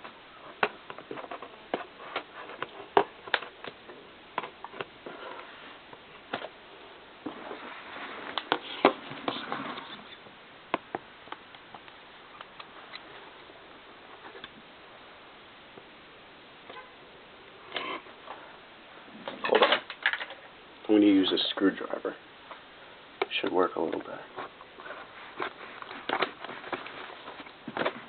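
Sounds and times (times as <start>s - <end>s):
packaging rustling and scraping: 7.2s - 10.2s, 24.3s - 28.0s.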